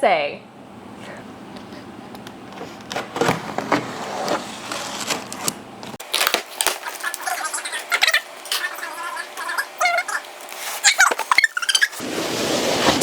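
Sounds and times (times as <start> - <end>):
crinkling handling noises: 1.7 - 8.7.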